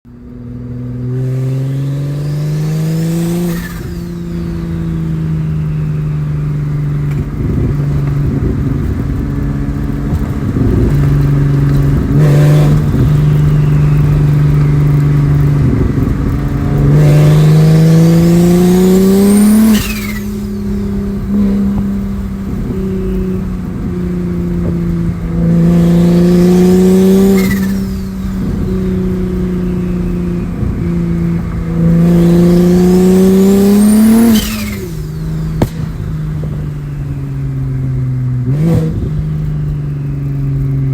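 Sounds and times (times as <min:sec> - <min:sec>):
car engine pulling hard: 0:00.1 - 0:40.9
turbo whistle: 0:12.6 - 0:14.8.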